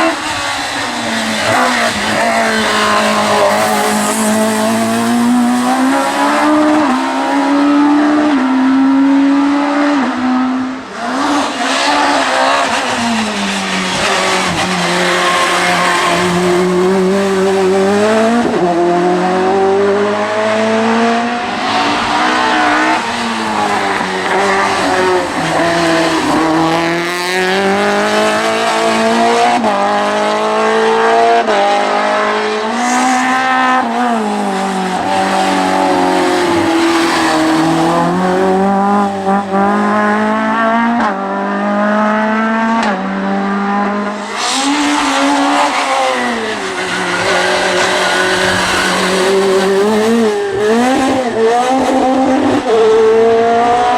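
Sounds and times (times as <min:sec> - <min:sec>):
race car engine revving: 0:00.0 - 0:53.9.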